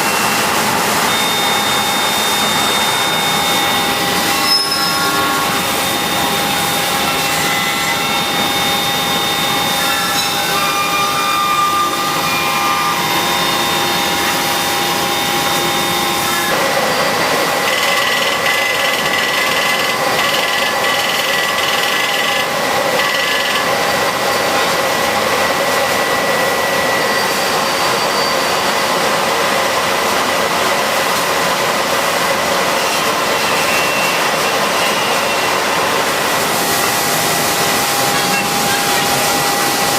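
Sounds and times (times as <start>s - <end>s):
machine whining tones: 0.0s - 30.4s, 31.0s - 39.9s
machine hiss: 32.4s - 39.9s.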